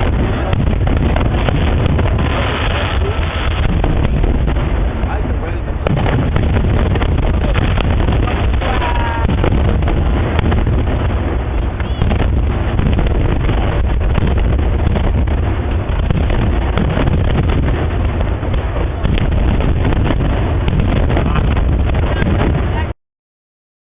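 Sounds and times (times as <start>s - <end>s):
fireworks bangs: 0.0s - 23.0s
low rumble: 0.0s - 23.0s
wind noise on microphone: 0.0s - 23.0s
short firework whistle: 11.6s - 12.4s.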